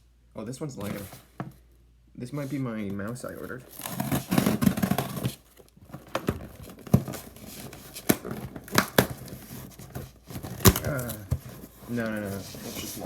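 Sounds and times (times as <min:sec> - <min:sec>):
packaging tearing and crinkling: 0:03.6 - 0:12.3.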